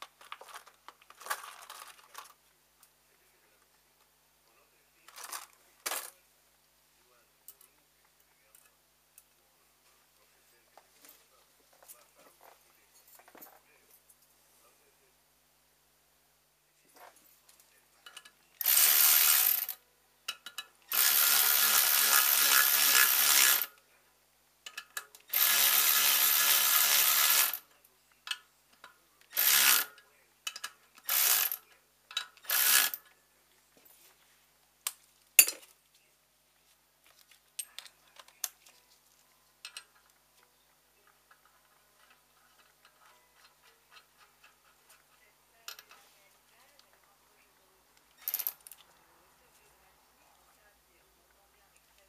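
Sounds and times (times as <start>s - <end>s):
power tool running: 25.3s - 27.6s.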